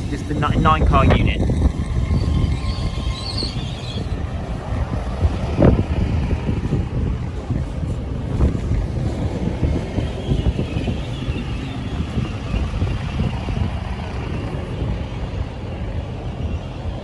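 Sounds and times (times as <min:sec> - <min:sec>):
faint high whine: 0:00.0 - 0:06.4
train machinery running: 0:00.0 - 0:17.0
wind on microphone: 0:00.0 - 0:17.0.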